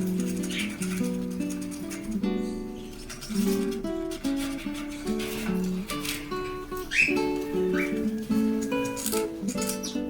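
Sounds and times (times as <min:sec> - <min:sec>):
plucked acoustic guitar: 0:00.0 - 0:10.0.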